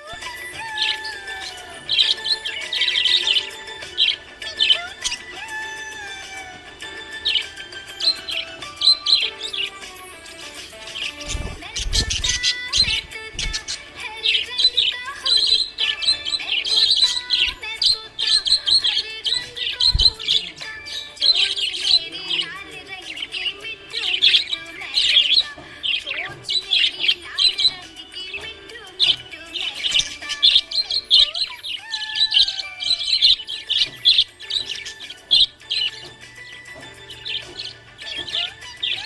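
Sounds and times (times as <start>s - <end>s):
budgerigars chirping: 0.0s - 39.0s.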